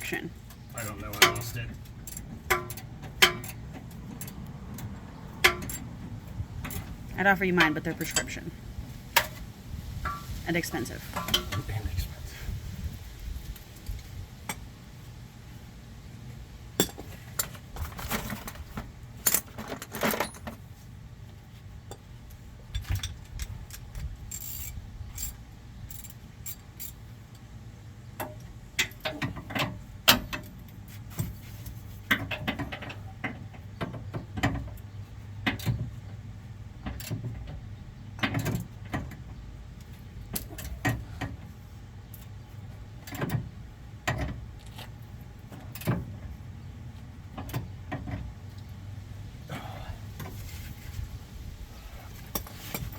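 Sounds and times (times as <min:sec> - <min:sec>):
tools clinking against metal: 0:00.8 - 0:03.6, 0:04.2 - 0:05.9, 0:11.2 - 0:11.7.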